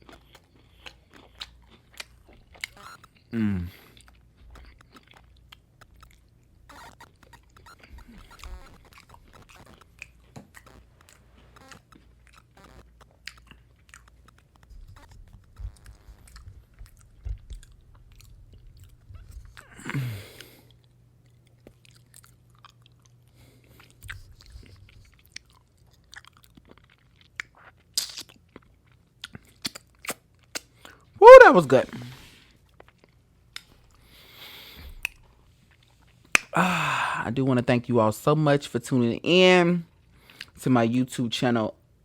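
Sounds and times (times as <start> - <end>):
person chewing crunchy food: 0.0 - 31.1, 32.1 - 37.0
short falling vocal sound: 3.3 - 3.8, 31.2 - 32.1, 36.6 - 37.2.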